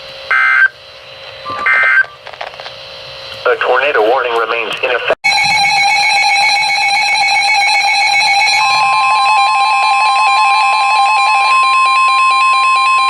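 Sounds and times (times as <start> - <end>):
pure steady alarm tone: 0.3 - 2.2, 2.8 - 13.0
buzzy electronic tone: 5.3 - 13.0.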